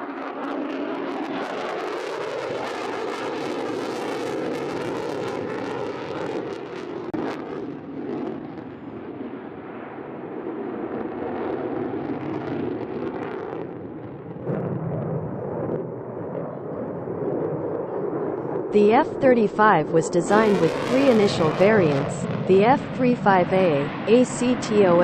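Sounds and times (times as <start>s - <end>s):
jet engine roar: 0.0s - 25.0s.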